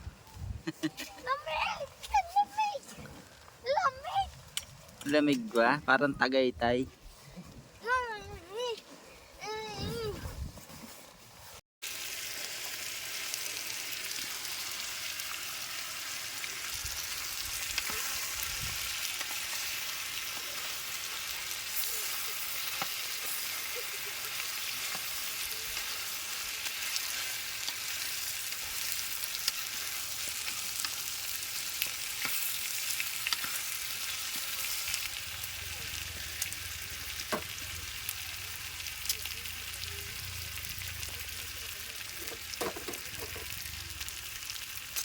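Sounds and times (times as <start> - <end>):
food sizzling in a hot pan: 11.8 - 45.0.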